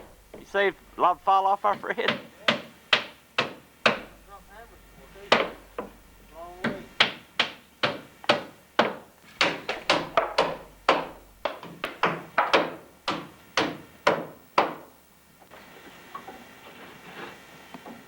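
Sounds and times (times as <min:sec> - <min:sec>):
hard knocks: 0:01.7 - 0:15.0.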